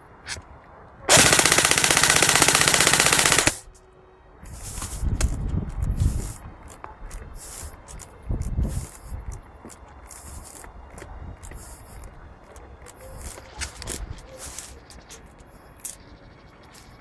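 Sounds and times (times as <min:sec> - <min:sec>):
airsoft gun automatic fire: 0:01.1 - 0:03.7
rustling and handling noise: 0:04.5 - 0:16.0.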